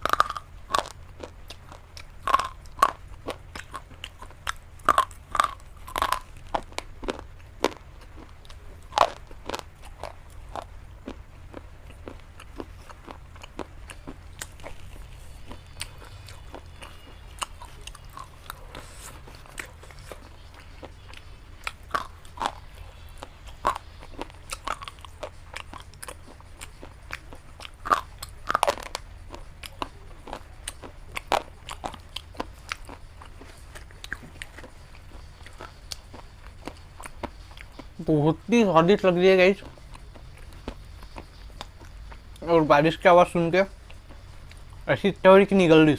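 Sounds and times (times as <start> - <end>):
slate pencils crunched by teeth: 0.0 - 10.7.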